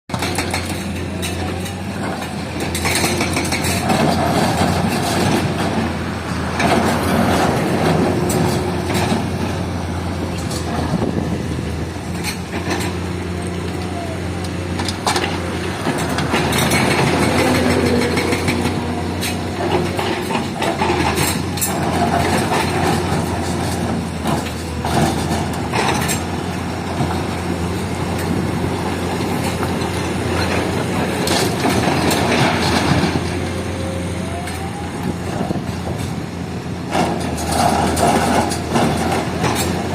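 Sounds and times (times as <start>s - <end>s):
excavator diesel engine running: 0.1s - 39.9s.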